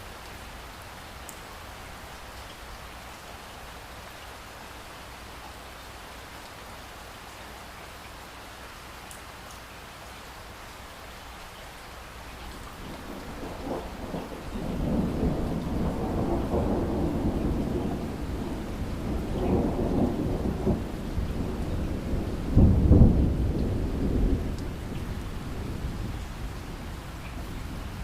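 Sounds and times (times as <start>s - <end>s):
steady pouring rain: 0.0s - 28.0s
thunder rumbling: 12.6s - 28.0s.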